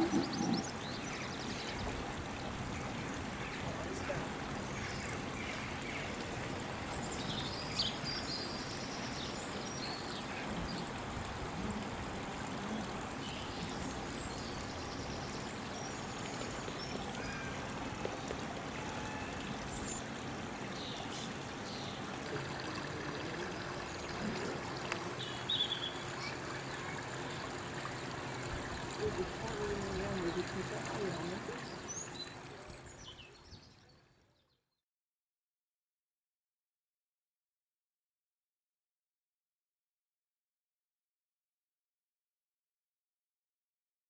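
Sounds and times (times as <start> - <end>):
stream running: 0.0 - 34.3.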